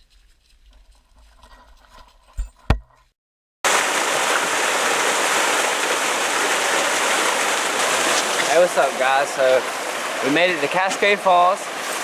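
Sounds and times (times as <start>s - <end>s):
waterfall rushing: 3.7s - 12.0s.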